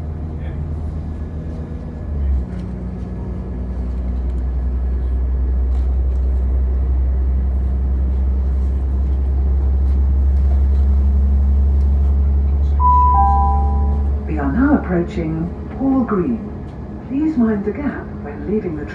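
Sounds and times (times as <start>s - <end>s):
train low rumble: 0.0s - 18.9s.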